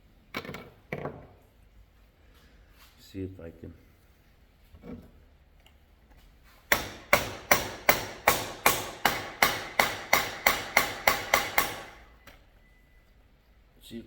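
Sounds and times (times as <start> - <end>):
hammer tapping metal: 6.7 - 12.0.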